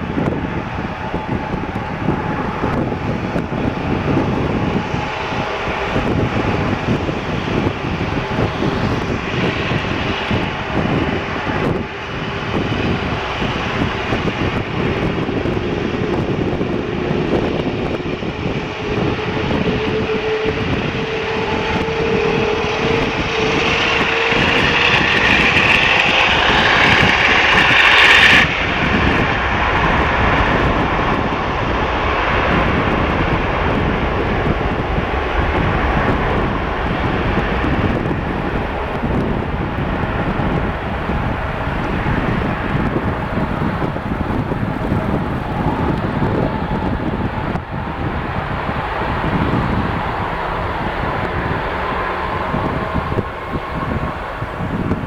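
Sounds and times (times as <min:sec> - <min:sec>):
jet engines roaring on takeoff: 0:00.0 - 0:55.0.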